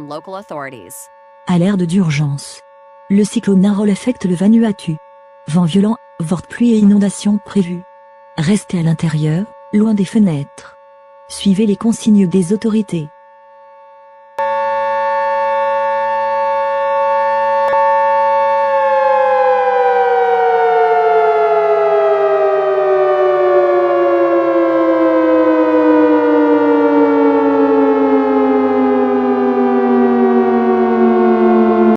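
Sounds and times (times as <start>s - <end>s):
emergency alert siren tone: 0.0s - 31.9s.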